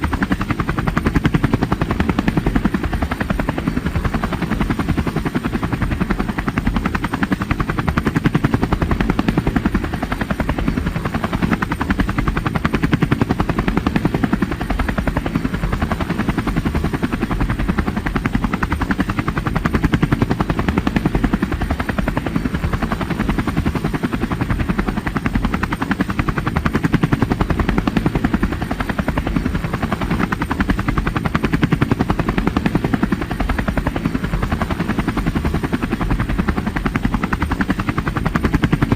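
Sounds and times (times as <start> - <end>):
helicopter rotor chop: 0.0 - 38.9.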